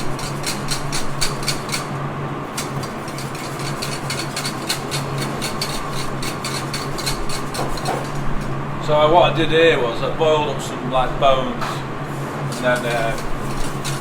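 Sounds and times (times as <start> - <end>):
utensil scraping a pan: 0.0 - 1.9, 2.5 - 8.4, 11.7 - 14.0
kitchen extractor fan hum: 0.0 - 14.0.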